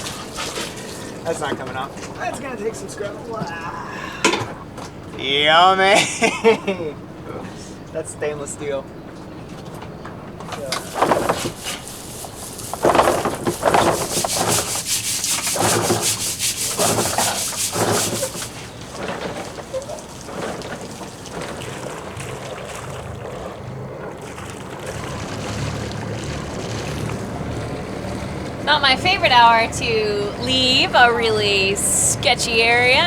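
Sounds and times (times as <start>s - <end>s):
stiff brush scrubbing: 0.0s - 2.4s, 10.6s - 23.6s, 24.2s - 33.0s
boat engine hum: 0.0s - 33.0s.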